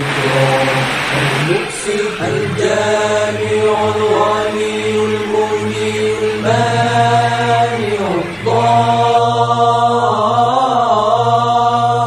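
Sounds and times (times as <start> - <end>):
melodic vocal chanting: 0.0 - 12.0.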